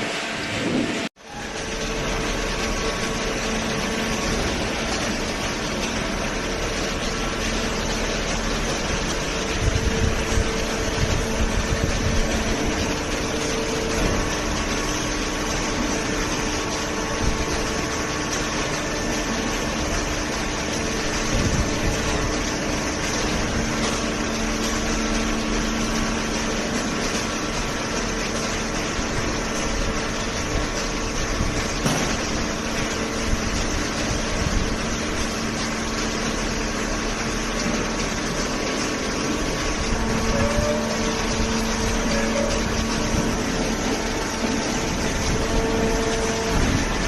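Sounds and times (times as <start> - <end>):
hydraulic baler motor humming: 0.0 - 47.0
loud knocks: 31.8 - 32.4.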